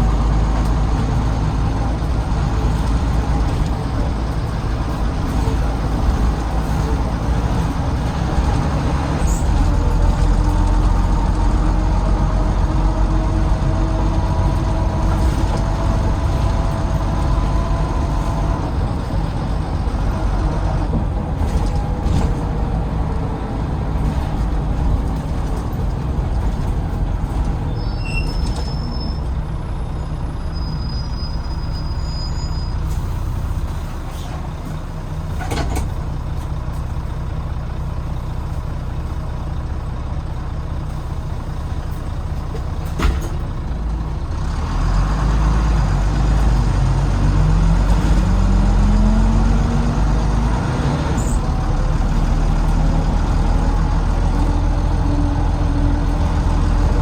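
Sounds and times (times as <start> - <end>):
bus diesel engine: 0.0 - 57.0.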